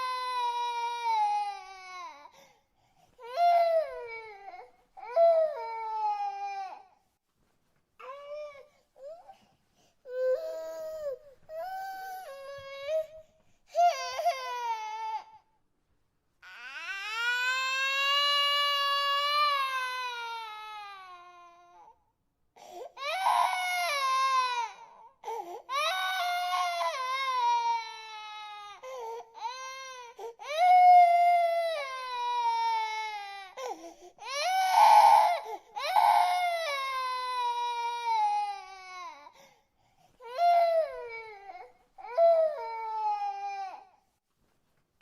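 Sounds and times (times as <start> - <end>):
infant crying: 0.0 - 2.4, 10.1 - 15.5, 16.4 - 22.0, 22.8 - 39.5, 40.2 - 44.0.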